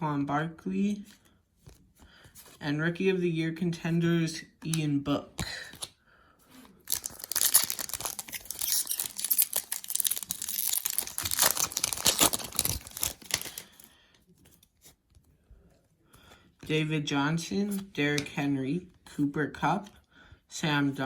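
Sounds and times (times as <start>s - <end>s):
wrapper tearing and crinkling: 6.8s - 13.8s.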